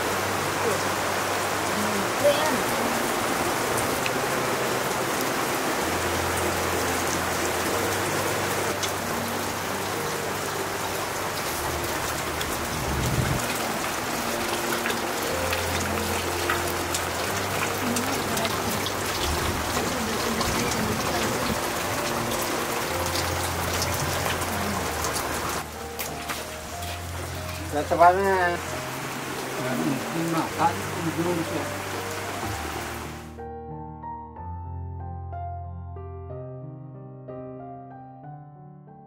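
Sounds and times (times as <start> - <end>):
rain-like hiss with fine ticks: 0.0 - 33.3
soft background music: 0.0 - 39.0.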